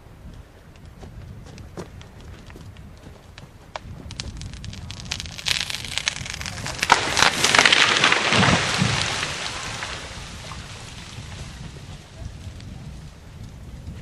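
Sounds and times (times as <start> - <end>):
tree falling with branches breaking: 4.1 - 12.8.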